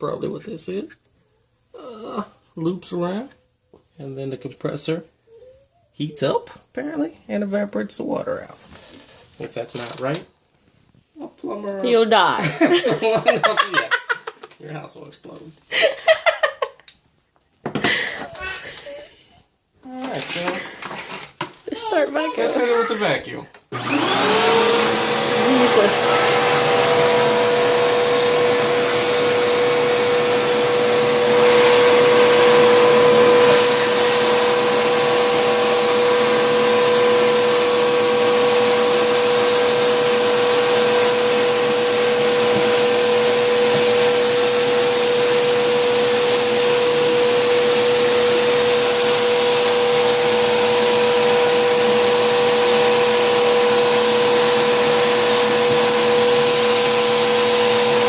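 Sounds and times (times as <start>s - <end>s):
vacuum cleaner running: 20.0s - 58.0s.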